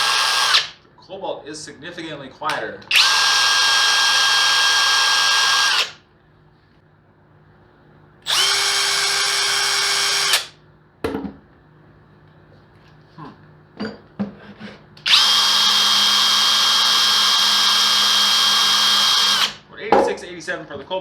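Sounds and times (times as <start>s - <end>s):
impact wrench whine: 0.0s - 0.8s, 2.8s - 6.0s, 8.3s - 10.6s, 15.1s - 19.6s.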